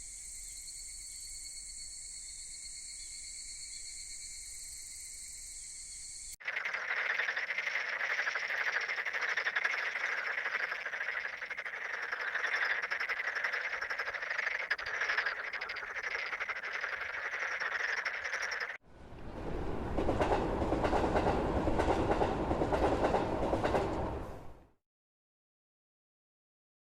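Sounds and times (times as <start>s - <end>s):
frogs croaking in chorus: 6.4s - 18.8s.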